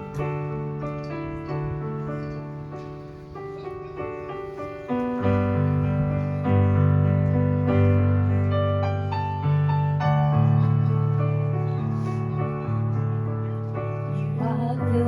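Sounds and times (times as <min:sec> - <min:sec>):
electric piano chords: 0:00.0 - 0:15.0.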